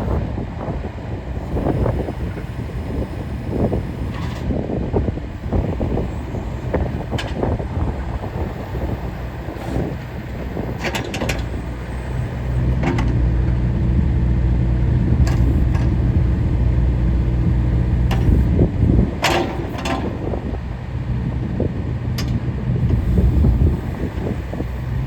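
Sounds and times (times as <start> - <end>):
excavator diesel engine running: 0.0 - 25.0
sharp knocks from machine: 19.2 - 20.1.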